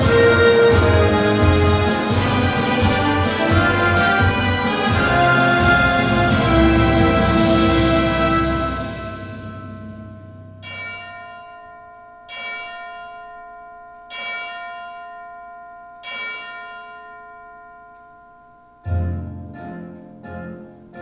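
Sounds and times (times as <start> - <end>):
held music chord: 0.0 - 10.6
deep bell tolling: 0.0 - 20.3.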